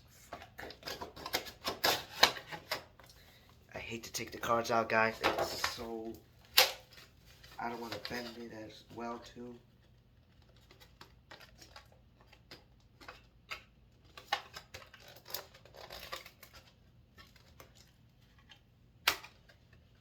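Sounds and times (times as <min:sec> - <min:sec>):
plastic and card crinkling: 0:00.1 - 0:20.0
sharp plastic snap: 0:06.5 - 0:06.8, 0:19.0 - 0:19.4.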